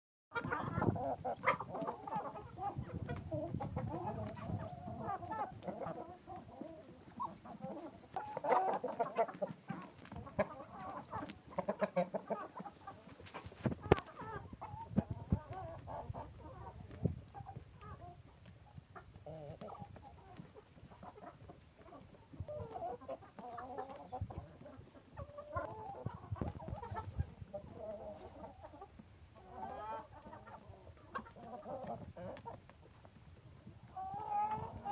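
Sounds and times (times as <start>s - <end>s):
chickens clucking: 0.3s - 34.9s.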